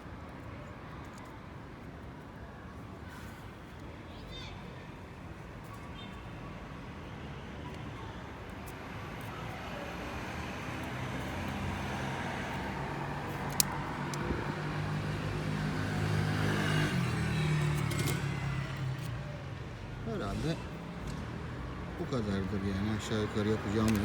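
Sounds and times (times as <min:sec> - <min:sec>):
sharp metallic click: 0:13.4 - 0:14.3.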